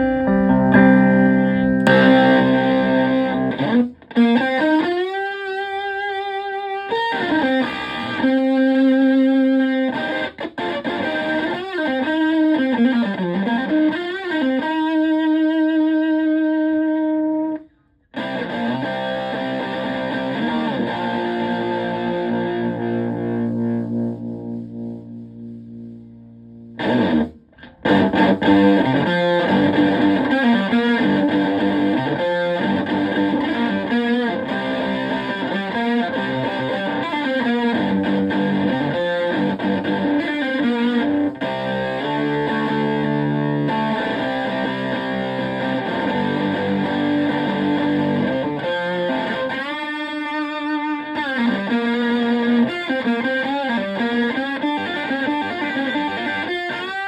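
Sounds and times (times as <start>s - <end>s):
fuzzy distorted electric guitar: 0.0s - 57.0s.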